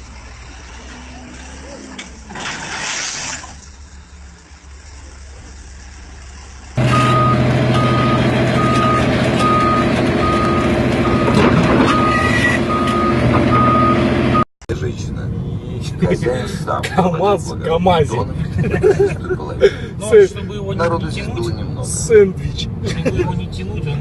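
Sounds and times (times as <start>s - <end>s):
heavy vehicle engine running: 3.8s - 19.0s
reversing alarm beeping: 6.8s - 14.4s.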